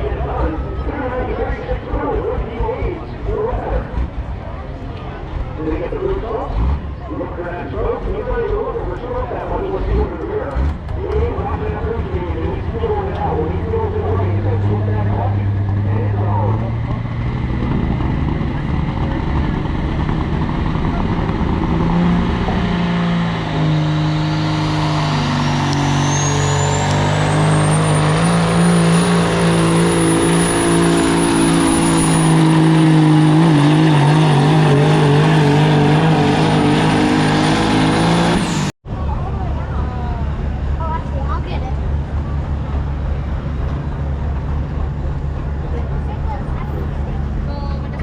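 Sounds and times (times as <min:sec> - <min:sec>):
diesel engine under load: 0:00.0 - 0:48.0
turbocharger whistle: 0:22.9 - 0:38.7.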